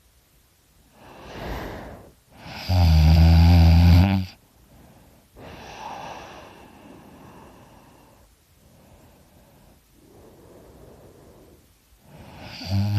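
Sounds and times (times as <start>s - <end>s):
breathy breaths: 0.9s - 2.5s, 4.4s - 12.9s
person snoring loudly: 1.1s - 4.4s, 12.2s - 12.9s.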